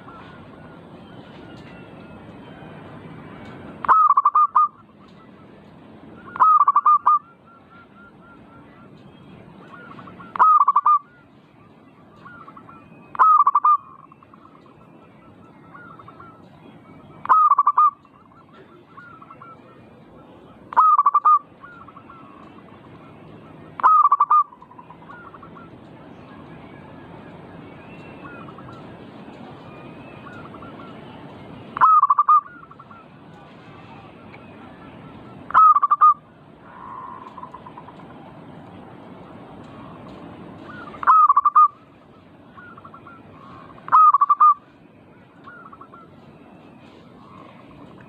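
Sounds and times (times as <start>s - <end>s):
dove cooing: 3.8s - 5.4s, 6.2s - 25.9s, 31.8s - 38.1s, 39.6s - 44.7s, 45.3s - 48.0s.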